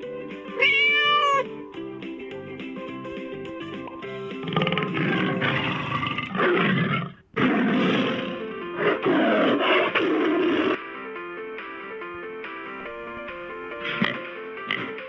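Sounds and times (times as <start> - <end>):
soft music with plucked notes: 0.0 - 5.7, 7.9 - 15.0
tiger roaring: 4.4 - 10.8.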